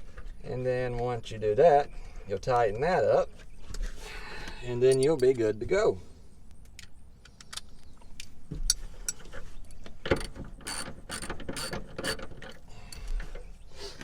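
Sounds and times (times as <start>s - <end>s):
ratchet wrench clicking: 10.1s - 12.3s.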